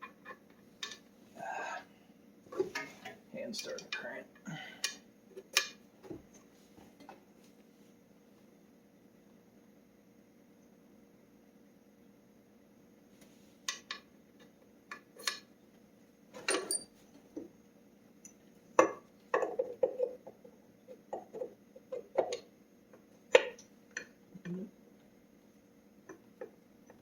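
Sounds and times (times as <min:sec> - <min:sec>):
metal parts and tools clinking: 0:16.4 - 0:16.9.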